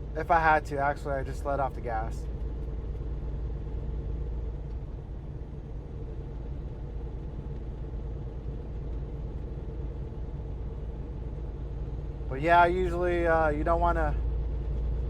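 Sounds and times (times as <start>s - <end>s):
diesel engine rumble: 0.0s - 15.0s
tyres on snowy road: 0.0s - 15.0s.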